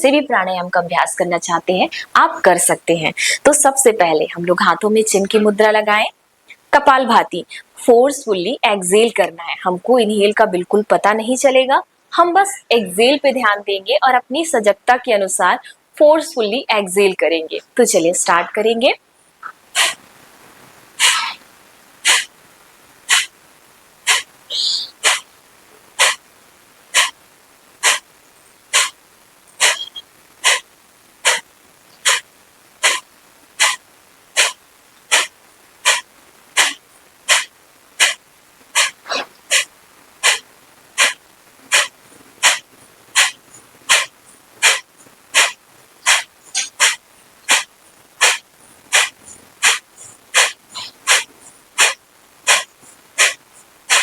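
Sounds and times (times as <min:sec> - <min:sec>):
forceful nasal exhalations: 0:21.0 - 0:21.4, 0:29.6 - 0:30.6, 0:32.8 - 0:33.0, 0:33.6 - 0:33.8, 0:34.4 - 0:36.0, 0:36.6 - 0:38.2, 0:38.8 - 0:40.4, 0:41.0 - 0:44.8, 0:45.4 - 0:54.0.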